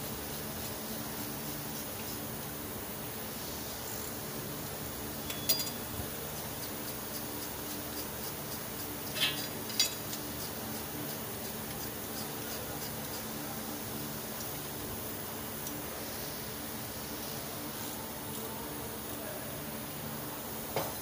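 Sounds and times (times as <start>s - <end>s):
steady low hum: 0.0s - 21.0s
light metallic clinks: 5.2s - 5.9s.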